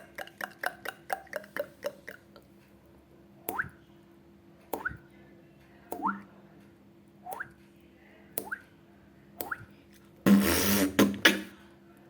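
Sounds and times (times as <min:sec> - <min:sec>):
sharp mouth clicks: 0:00.0 - 0:02.5.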